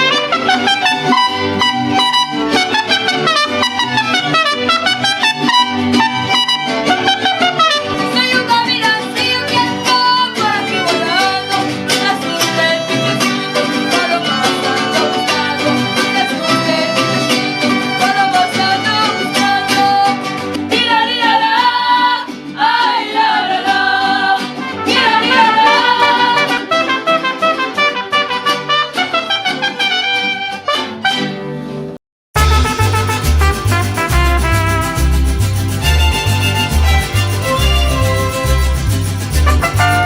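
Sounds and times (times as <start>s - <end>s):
mariachi band with violins and guitars: 0.0s - 40.0s.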